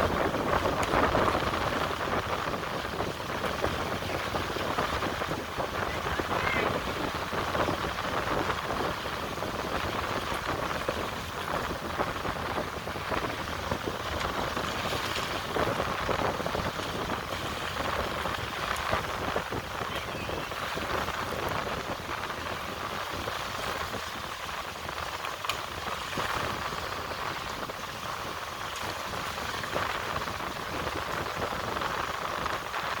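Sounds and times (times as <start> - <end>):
sea rushing: 0.0 - 33.0.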